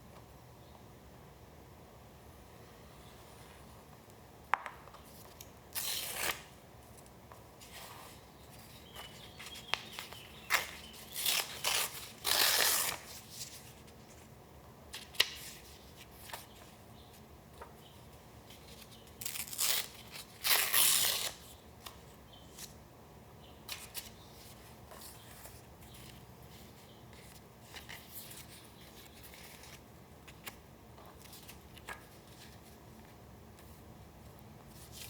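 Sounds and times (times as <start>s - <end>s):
paper tearing and rustling: 10.5s - 13.3s, 19.2s - 21.4s.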